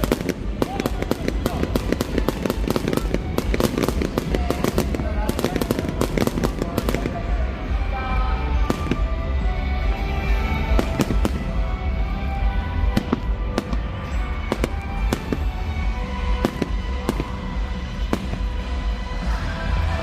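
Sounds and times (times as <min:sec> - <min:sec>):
fireworks bangs: 0:00.0 - 0:07.4, 0:08.6 - 0:09.2, 0:10.7 - 0:11.6, 0:12.8 - 0:19.0
music playing: 0:00.0 - 0:20.0.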